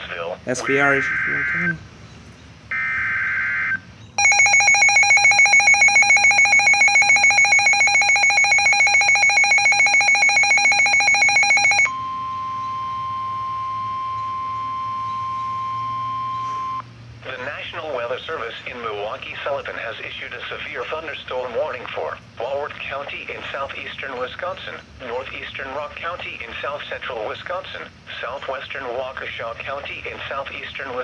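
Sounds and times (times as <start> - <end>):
pulsing electronic alarm: 0.6 - 1.8, 2.7 - 16.8
steady warning alarm tone: 0.6 - 1.8, 2.7 - 16.8.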